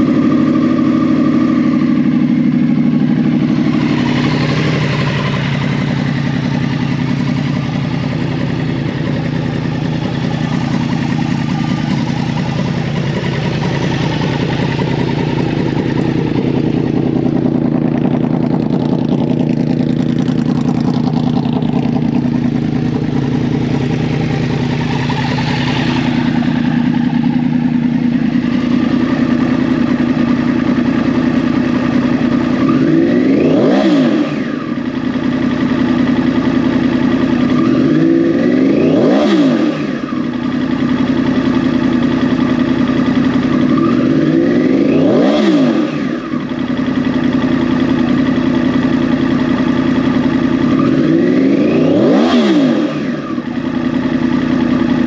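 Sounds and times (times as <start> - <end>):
motorcycle engine idling: 0.0 - 55.0
motorcycle engine revving: 0.0 - 55.0.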